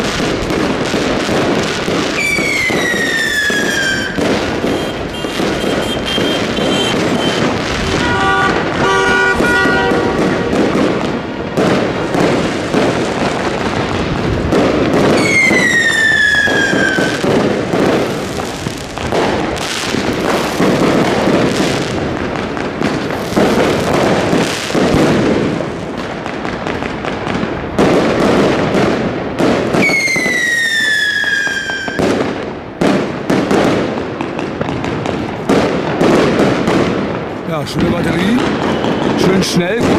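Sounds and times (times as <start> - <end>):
firecrackers and bangs: 0.0 - 39.9
whistling fireworks: 0.0 - 39.9.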